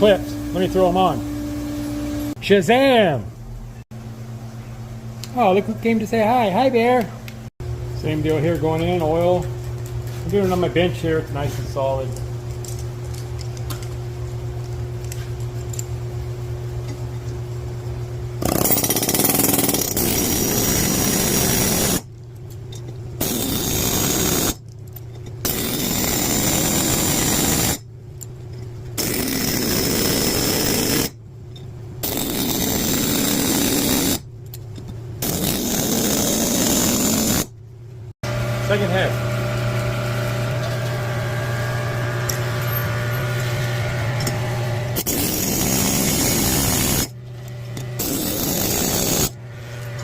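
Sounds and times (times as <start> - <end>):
steady low hum: 0.0 - 50.0
pneumatic air hammer rattling: 18.4 - 27.8, 28.9 - 31.2, 32.0 - 37.5, 44.1 - 50.0.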